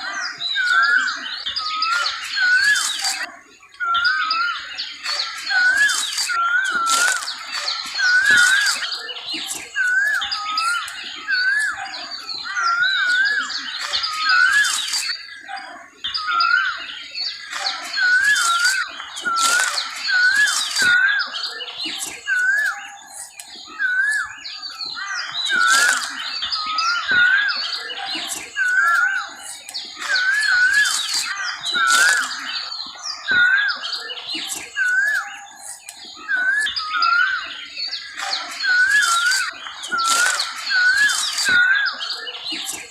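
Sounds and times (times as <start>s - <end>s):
chorus of birds chirping: 0.0s - 42.9s
bird calling rising note: 16.1s - 42.8s.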